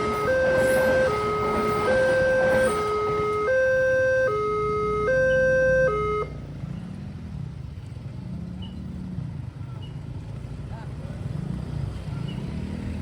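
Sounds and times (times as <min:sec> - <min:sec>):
two-tone level crossing alarm: 0:00.0 - 0:06.4
low road traffic rumble: 0:00.0 - 0:13.0.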